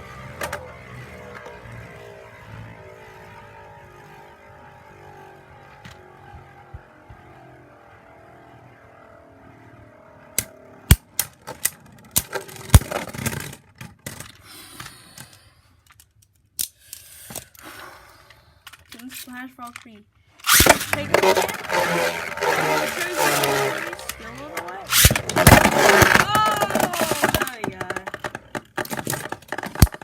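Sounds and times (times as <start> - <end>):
spinning tops whirring: 0.0 - 14.4, 20.3 - 30.0
sharp plastic clacks and knocks: 18.6 - 30.0.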